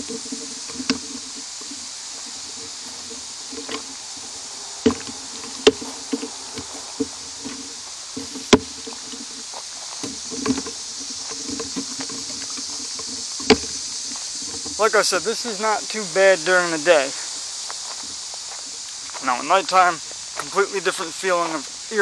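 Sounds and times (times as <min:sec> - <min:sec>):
steady high hiss: 0:00.0 - 0:22.0.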